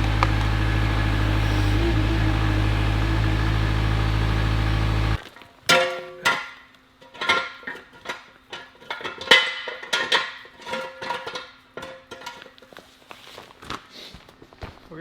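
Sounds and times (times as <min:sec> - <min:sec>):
metallic clanks and knocks: 0:04.8 - 0:12.6.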